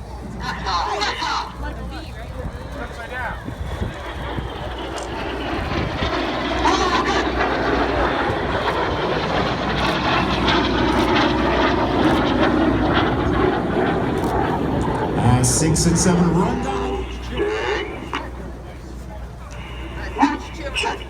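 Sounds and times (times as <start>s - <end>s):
jets flying past: 2.5s - 18.9s.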